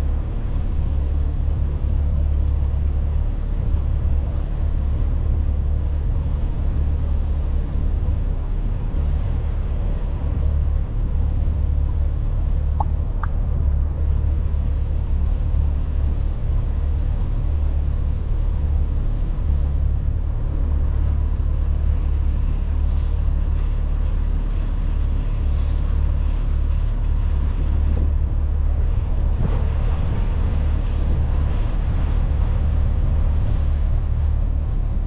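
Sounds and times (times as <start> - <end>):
boat motor rumbling: 0.0 - 35.0
wind noise: 0.0 - 35.0
water noise: 8.6 - 25.2.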